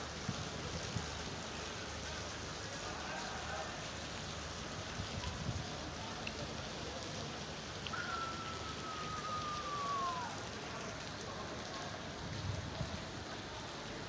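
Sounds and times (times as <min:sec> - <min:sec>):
heavy rain hissing: 0:00.0 - 0:14.0.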